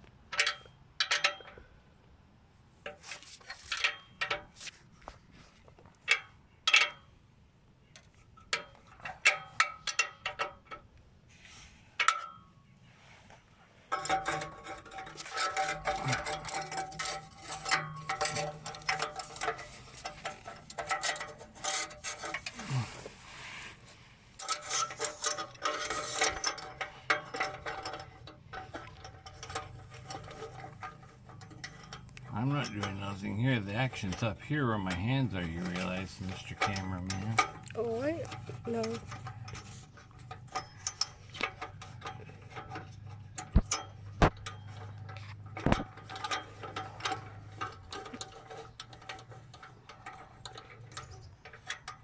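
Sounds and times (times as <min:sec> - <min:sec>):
metal tools clicking and clinking: 0:00.3 - 0:01.6, 0:06.0 - 0:07.1, 0:13.9 - 0:22.8, 0:24.4 - 0:52.0.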